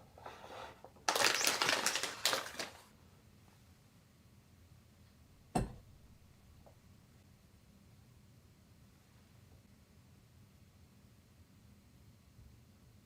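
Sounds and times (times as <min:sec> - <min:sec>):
packaging crinkling: 0:01.0 - 0:02.9.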